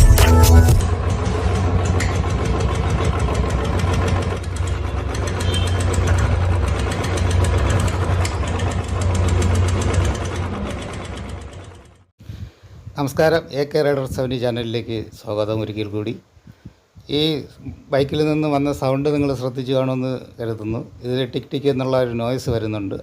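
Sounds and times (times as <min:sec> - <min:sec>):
regular engine ticking: 0:00.0 - 0:12.1
motorcycle engine idling: 0:00.8 - 0:12.1.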